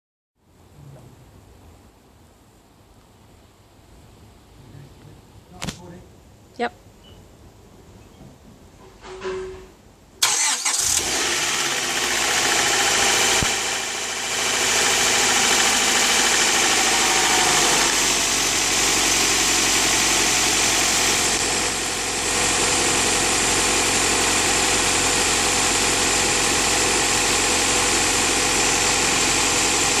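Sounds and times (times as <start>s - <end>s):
car engine idling: 10.2s - 30.0s.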